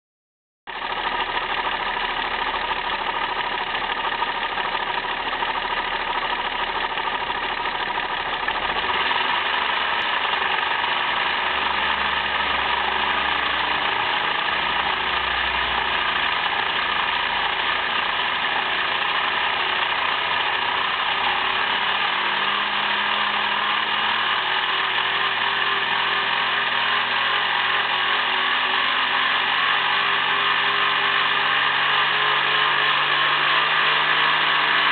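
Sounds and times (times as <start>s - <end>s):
car engine idling: 0.7s - 25.6s.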